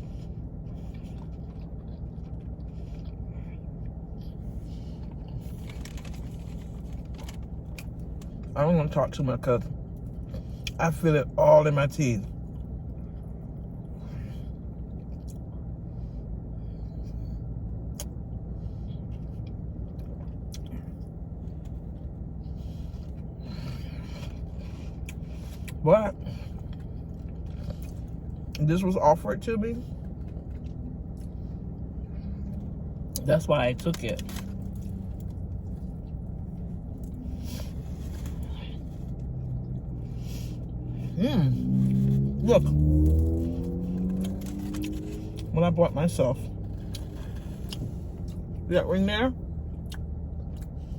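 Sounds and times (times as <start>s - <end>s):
person chewing: 0.0s - 8.5s, 18.9s - 28.6s, 29.9s - 33.3s, 34.1s - 45.5s, 46.4s - 48.7s, 49.6s - 50.9s
car engine idling: 0.0s - 50.9s
steady low rumble: 0.0s - 50.9s.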